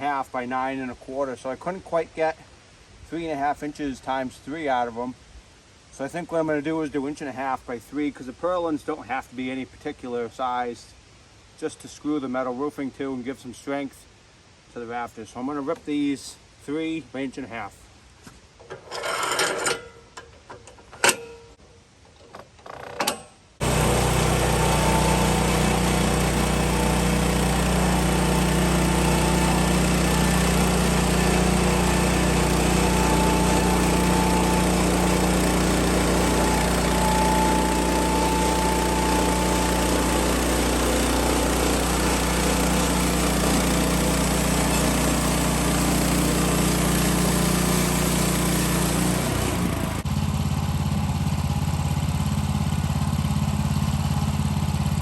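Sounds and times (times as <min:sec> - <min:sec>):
saw blade cutting wood: 0:23.6 - 0:50.0
sawmill engine running: 0:23.6 - 0:55.0.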